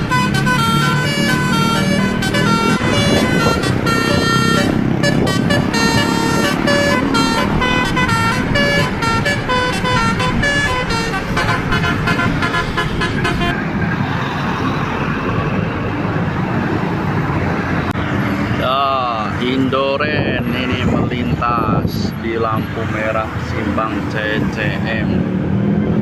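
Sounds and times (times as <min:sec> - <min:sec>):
bus horn playing a melody: 0:00.0 - 0:13.8
engine and traffic noise: 0:00.0 - 0:26.0.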